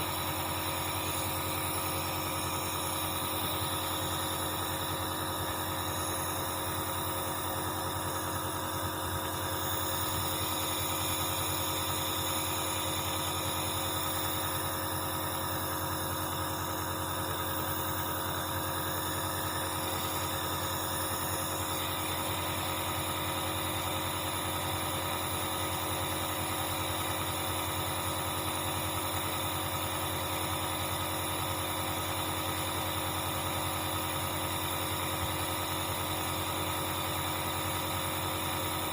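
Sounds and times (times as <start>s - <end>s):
electric compressor humming: 0.0s - 26.0s.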